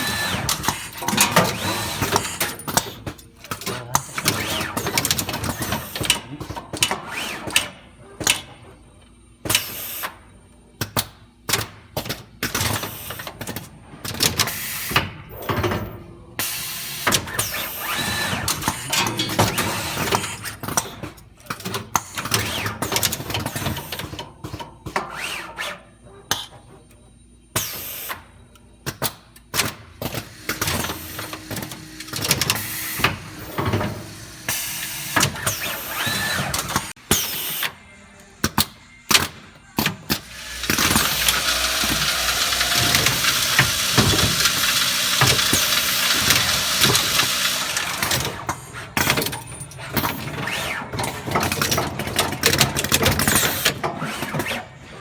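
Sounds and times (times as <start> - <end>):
power drill running: 0.0 - 2.6, 30.1 - 37.0, 40.2 - 48.5.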